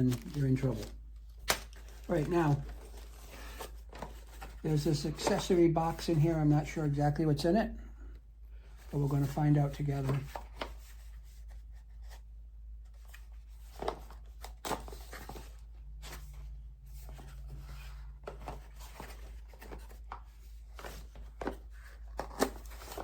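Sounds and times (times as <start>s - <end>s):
packaging rustling: 0.0s - 6.1s, 13.0s - 23.0s.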